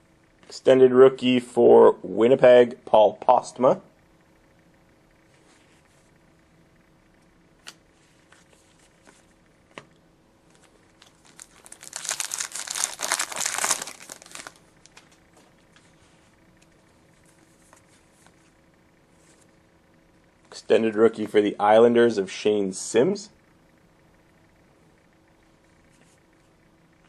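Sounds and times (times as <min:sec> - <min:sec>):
foil wrapper tearing and crinkling: 0:11.0 - 0:15.0.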